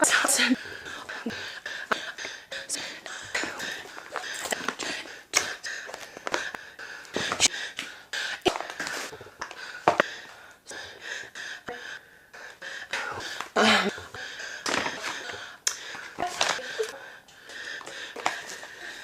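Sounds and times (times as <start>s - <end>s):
woman breathing heavily: 0.0s - 19.0s.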